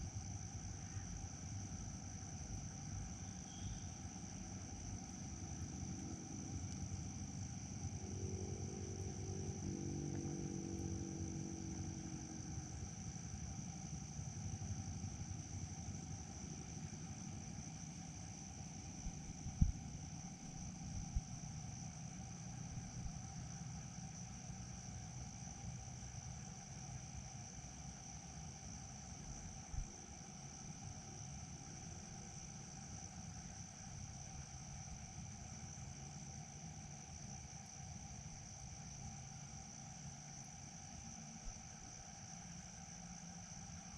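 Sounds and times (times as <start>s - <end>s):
faint droning tone: 0.0s - 37.6s
insects chirring: 0.0s - 43.9s
low background rumble: 0.1s - 30.8s.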